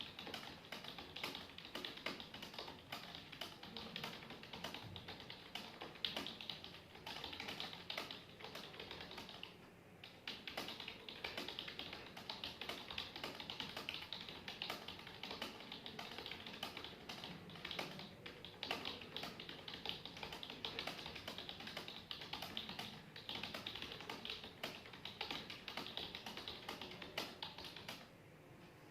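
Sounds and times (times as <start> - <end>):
fast keyboard typing: 0.0 - 28.1.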